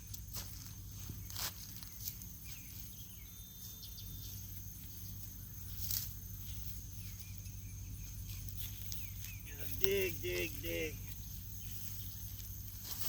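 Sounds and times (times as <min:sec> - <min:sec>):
insect chirring: 0:00.0 - 0:13.0
hands digging in soil: 0:08.3 - 0:13.0.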